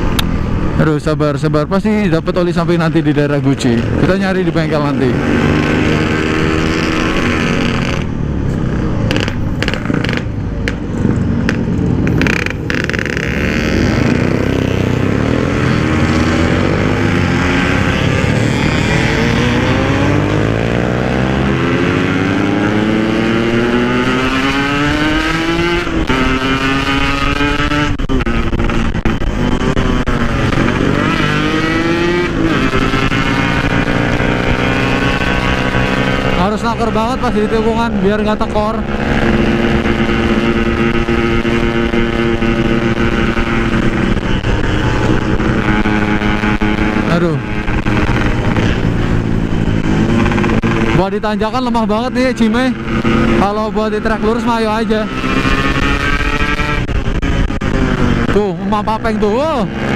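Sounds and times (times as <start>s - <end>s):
motorcycle accelerating and shifting: 0.0s - 59.9s.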